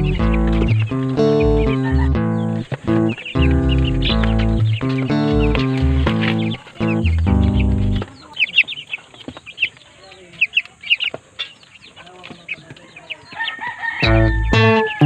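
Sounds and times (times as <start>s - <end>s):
loud guitar music: 0.0s - 8.0s, 14.0s - 15.0s
chickens peeping and clucking: 0.0s - 15.0s.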